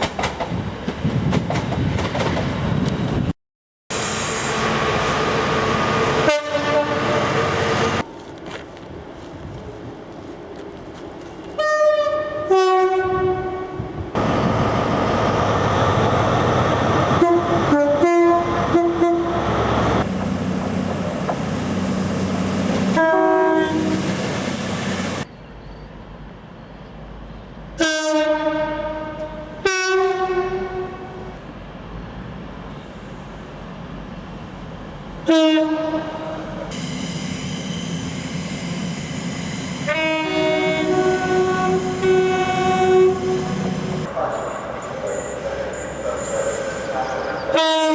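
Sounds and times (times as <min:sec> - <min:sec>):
trains passing on rails: 0:00.0 - 0:03.3, 0:03.9 - 0:47.9
train two-tone horn: 0:06.2 - 0:08.0, 0:11.6 - 0:13.8, 0:17.2 - 0:19.4, 0:22.6 - 0:24.3, 0:27.8 - 0:31.3, 0:35.2 - 0:38.6, 0:39.5 - 0:44.5, 0:47.5 - 0:47.9.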